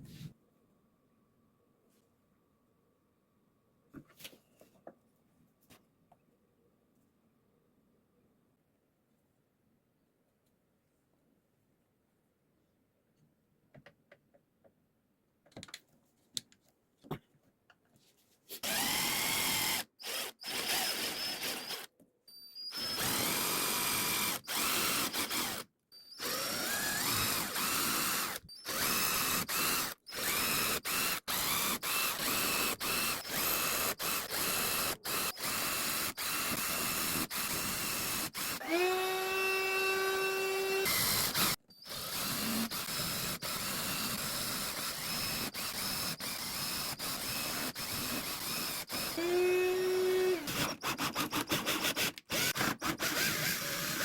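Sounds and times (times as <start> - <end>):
power drill whirring: 18.6 - 54.0.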